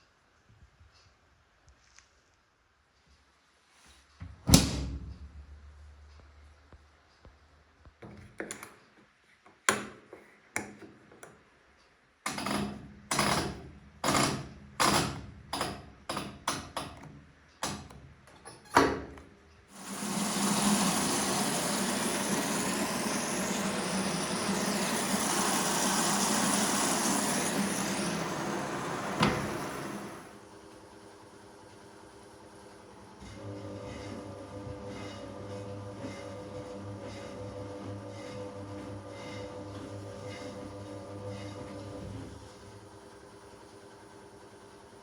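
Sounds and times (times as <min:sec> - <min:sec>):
washing machine knocks and clunks: 0:04.2 - 0:05.4, 0:27.9 - 0:30.2
washing machine rushing noise: 0:19.7 - 0:30.5, 0:33.1 - 0:43.0.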